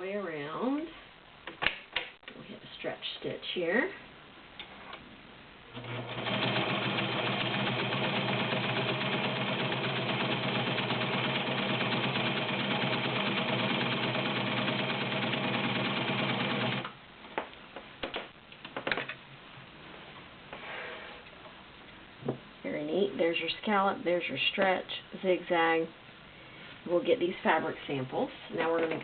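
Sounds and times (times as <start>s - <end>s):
sewing machine running: 5.8s - 16.9s.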